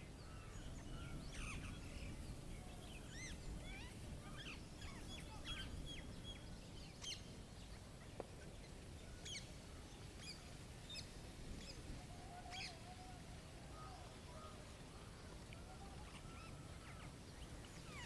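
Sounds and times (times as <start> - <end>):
small birds chirping: 0.1 - 11.8.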